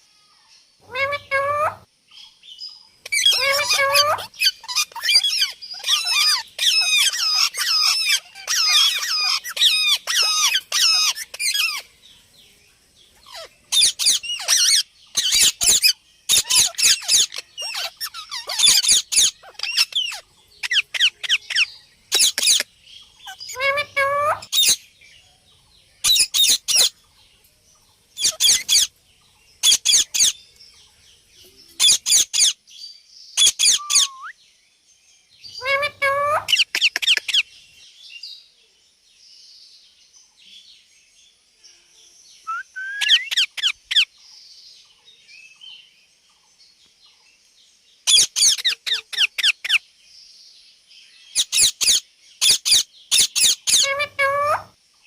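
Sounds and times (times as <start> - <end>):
parrot chirping and squeaking: 0.8 - 1.8, 3.0 - 11.8, 13.3 - 22.6, 23.2 - 24.8, 26.0 - 26.9, 28.2 - 28.9, 29.6 - 30.4, 31.8 - 32.6, 33.4 - 34.3, 35.6 - 37.4, 48.1 - 49.8, 51.4 - 54.7.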